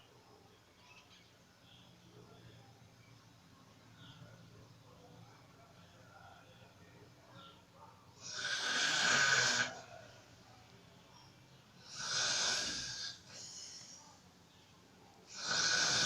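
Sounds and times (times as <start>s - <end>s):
woman snoring: 8.2s - 9.7s, 11.8s - 13.6s, 15.3s - 16.0s.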